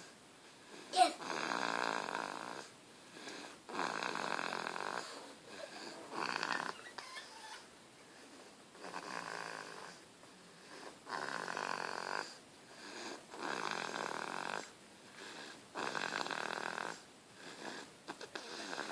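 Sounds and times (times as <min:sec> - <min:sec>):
baby snoring: 0:01.0 - 0:02.7, 0:03.7 - 0:07.6, 0:08.8 - 0:10.0, 0:10.7 - 0:14.7, 0:15.8 - 0:18.9.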